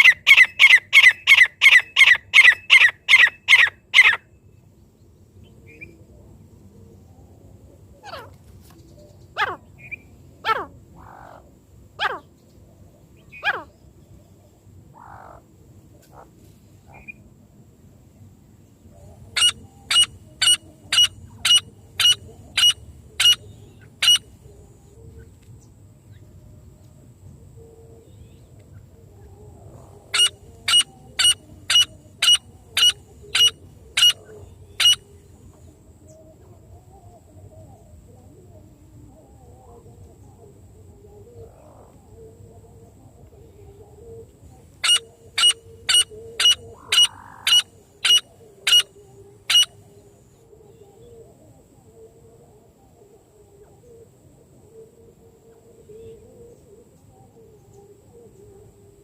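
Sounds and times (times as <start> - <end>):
francolin calling: 0.0 - 4.4, 19.0 - 25.3, 28.0 - 36.5, 43.5 - 51.2.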